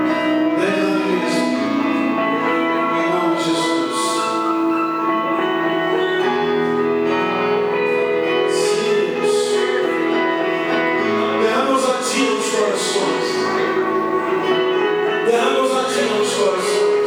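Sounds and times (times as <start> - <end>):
soft sustained worship chords: 0.0 - 17.0.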